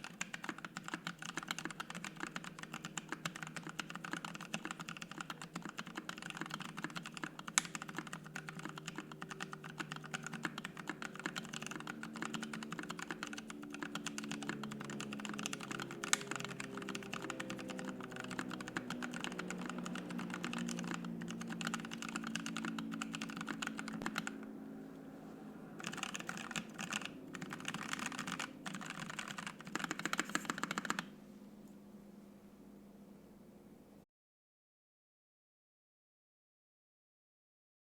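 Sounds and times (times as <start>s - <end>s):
typing on mechanical keyboard: 0.0s - 24.4s, 25.8s - 31.1s.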